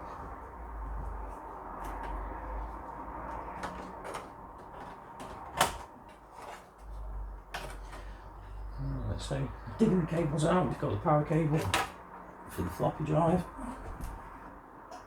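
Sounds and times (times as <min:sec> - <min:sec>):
plastic and metal parts clicking: 0:03.4 - 0:08.1.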